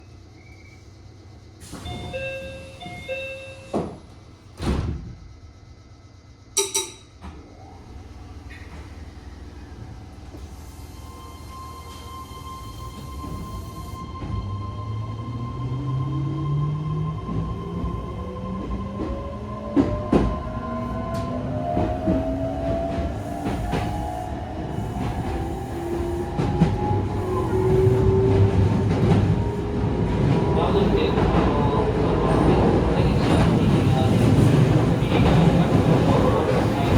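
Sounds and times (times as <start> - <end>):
train door chime: 1.7 - 4.0
short sharp ring: 6.6 - 7.1.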